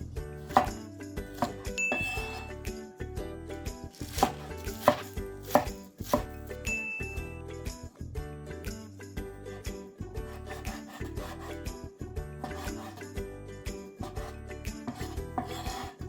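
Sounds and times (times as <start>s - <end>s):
upbeat background music: 0.0s - 16.0s
knife chopping on cutting board: 0.4s - 2.5s, 4.0s - 6.4s, 10.2s - 11.6s, 12.4s - 13.1s, 14.0s - 16.0s.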